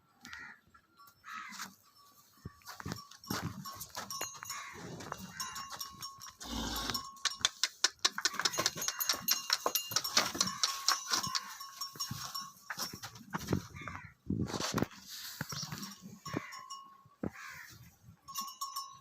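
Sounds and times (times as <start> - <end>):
metallic clanking of cow gear: 2.8 - 14.0.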